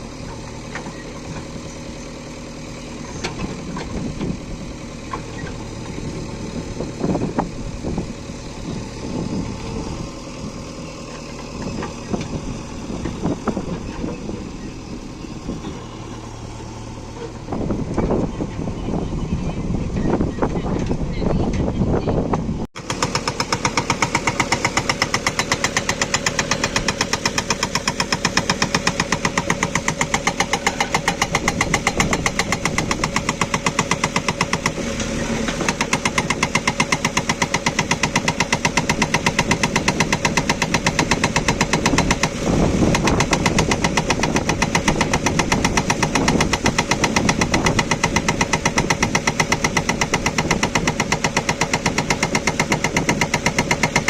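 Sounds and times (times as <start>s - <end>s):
diesel engine running: 0.0s - 54.0s
hydraulic breaker hammering stone: 22.8s - 54.0s.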